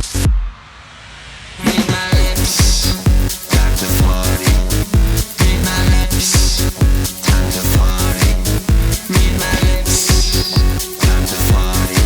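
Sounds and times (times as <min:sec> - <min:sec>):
electronic dance music: 0:00.0 - 0:00.8, 0:01.5 - 0:12.0.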